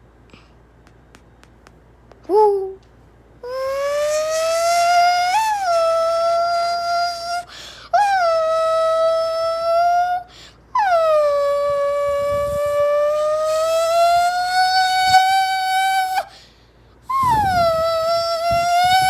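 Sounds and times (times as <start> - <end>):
high buzzy nasal tone: 3.4 - 10.2, 10.9 - 16.4, 17.1 - 19.0.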